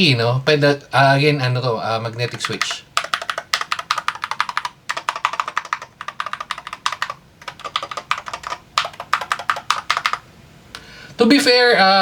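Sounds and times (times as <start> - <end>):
clacky keyboard typing: 2.1 - 10.2.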